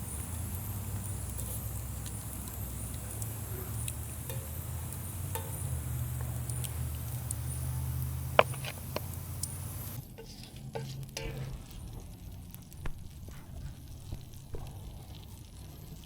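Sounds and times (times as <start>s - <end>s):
low hum: 0.0s - 10.0s
oil sizzling in a pan: 0.0s - 16.0s
sharp clicks: 0.3s - 10.0s.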